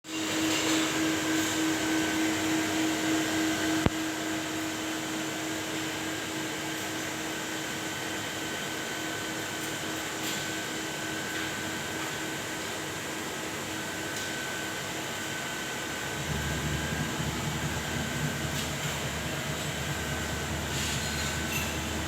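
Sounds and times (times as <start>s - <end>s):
machine hum with high whine: 0.1s - 22.0s.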